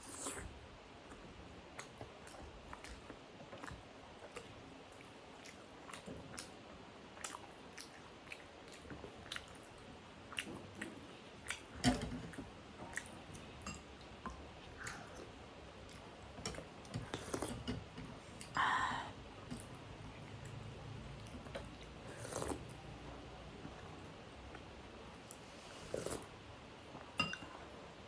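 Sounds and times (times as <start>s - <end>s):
person chewing food: 7.2s - 13.6s, 14.2s - 18.6s, 19.4s - 22.9s, 23.7s - 26.4s.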